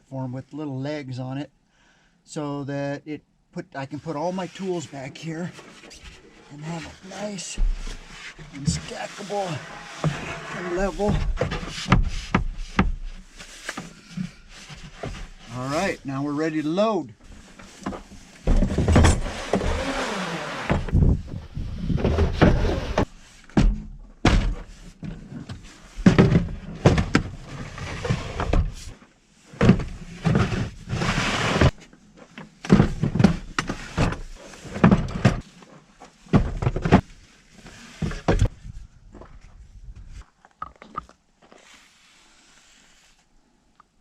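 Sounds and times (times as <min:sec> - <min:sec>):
tool cases sliding on plywood: 0:05.5 - 0:15.9, 0:17.3 - 0:23.6, 0:25.1 - 0:28.9, 0:29.5 - 0:31.8
tool cases thunking and knocking: 0:17.6 - 0:28.8, 0:32.6 - 0:35.4, 0:36.2 - 0:37.1, 0:38.0 - 0:38.5.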